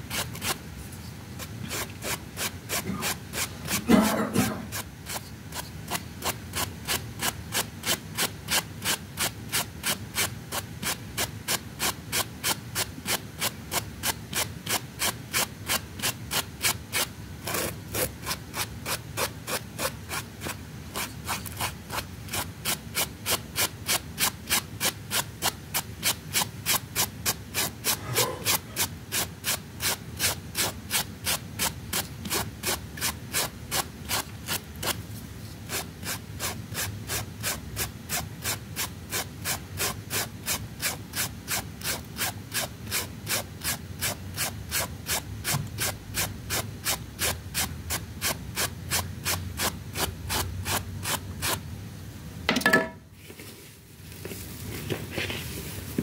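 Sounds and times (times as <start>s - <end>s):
brush scrubbing rug: 53.2s - 56.0s.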